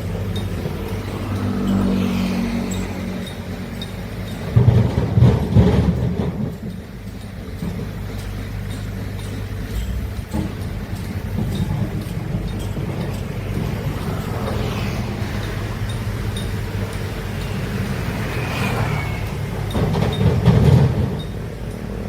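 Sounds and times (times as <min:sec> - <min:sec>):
excavator diesel engine under load: 0:00.0 - 0:22.0
high machinery squeals: 0:17.3 - 0:20.4.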